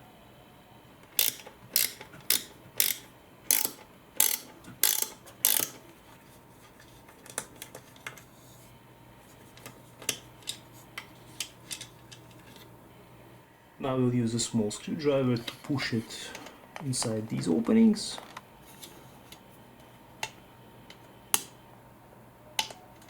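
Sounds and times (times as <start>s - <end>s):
ratcheting screwdriver clicking: 1.2s - 5.8s.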